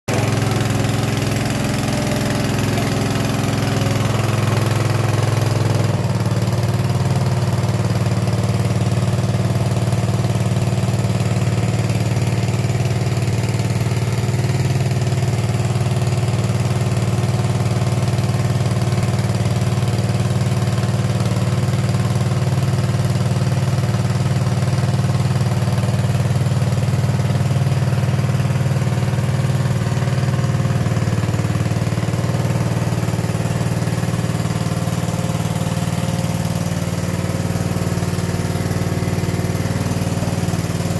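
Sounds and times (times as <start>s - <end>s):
small engine running: 0.1s - 40.9s.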